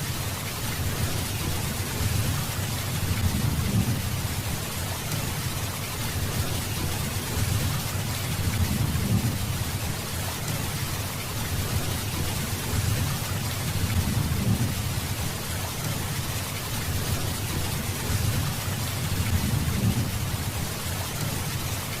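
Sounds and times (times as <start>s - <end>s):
steady rain hissing: 0.0s - 22.0s
low rolling thunder: 0.9s - 4.6s, 6.2s - 9.9s, 11.5s - 15.4s, 16.8s - 20.6s.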